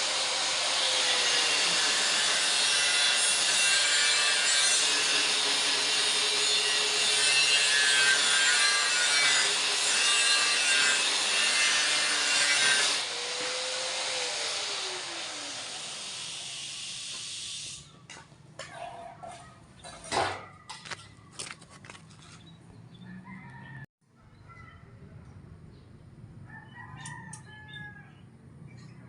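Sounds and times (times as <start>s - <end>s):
angle grinder cutting: 0.0s - 17.9s.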